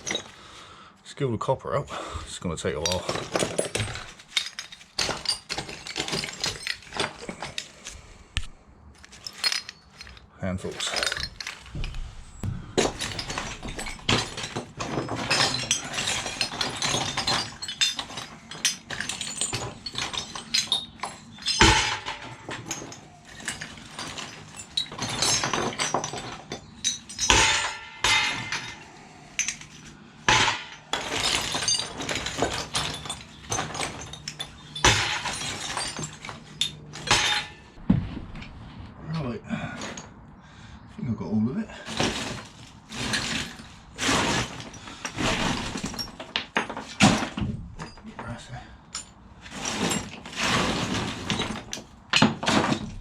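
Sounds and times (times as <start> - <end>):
metal pieces dropped clanking: 0.0 - 0.4, 2.7 - 8.0, 9.0 - 37.8, 41.9 - 53.0
metal scrap clinking: 2.7 - 8.0, 9.0 - 37.8.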